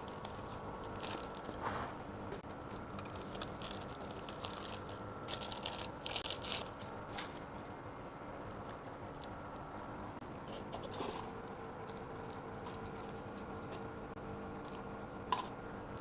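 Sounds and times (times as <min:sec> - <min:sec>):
plastic food packaging crinkling: 0:00.0 - 0:01.7, 0:02.5 - 0:07.5.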